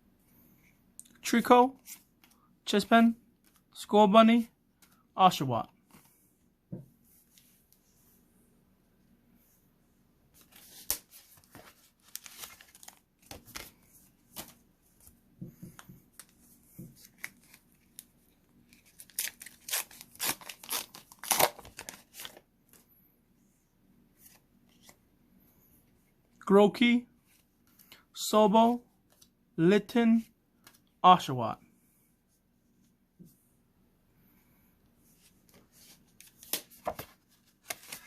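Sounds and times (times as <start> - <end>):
card pack wrapper tearing: 18.8 - 22.4.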